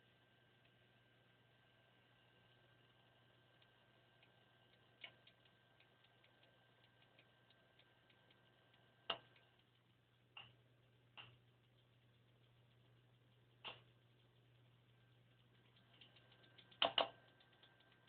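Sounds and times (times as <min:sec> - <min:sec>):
hard drive rapid ticking: 0:00.0 - 0:18.0
steady low hum: 0:00.0 - 0:18.0
hard drive loud clicks: 0:15.7 - 0:18.0.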